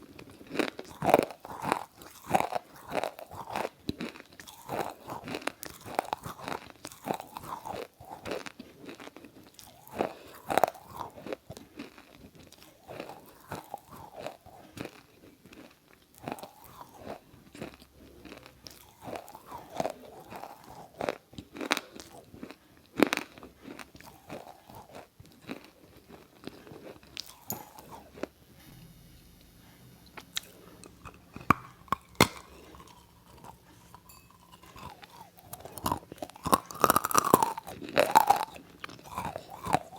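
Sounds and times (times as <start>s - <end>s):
chewing crisp food: 0.0s - 28.3s, 30.2s - 39.9s.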